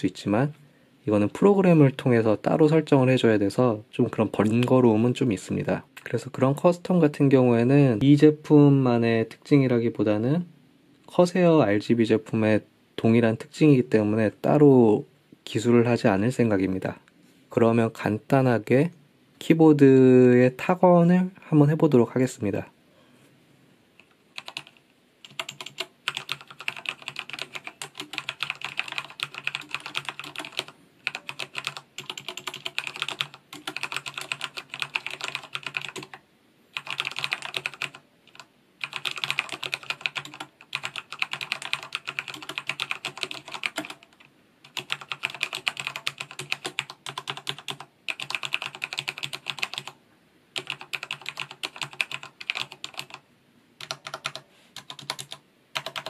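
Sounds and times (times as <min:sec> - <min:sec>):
mechanical keyboard typing: 0:24.0 - 0:36.2, 0:36.8 - 0:50.0, 0:50.6 - 0:53.2, 0:53.8 - 0:56.0.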